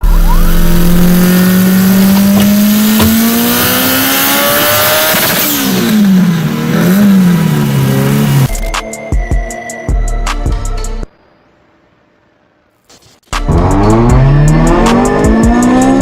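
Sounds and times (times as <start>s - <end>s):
car engine accelerating: 0.0s - 8.6s, 13.4s - 16.0s.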